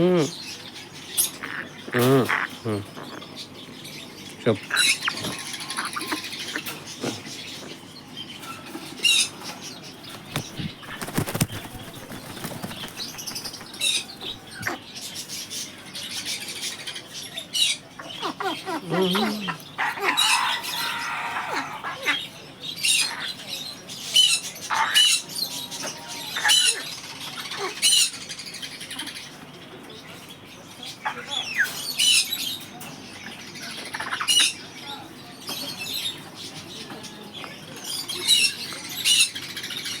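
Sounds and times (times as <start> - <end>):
parrot squawking and chirping: 4.6 - 6.8, 10.1 - 15.0, 17.6 - 23.3.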